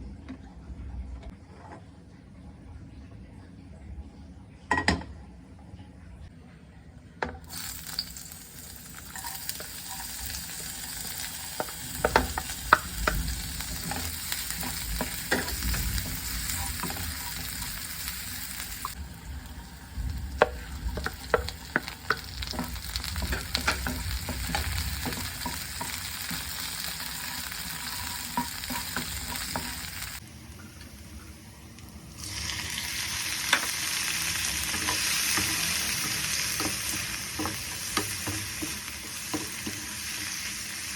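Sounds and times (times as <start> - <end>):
food sizzling in frying pan: 7.5 - 30.2, 32.2 - 40.9.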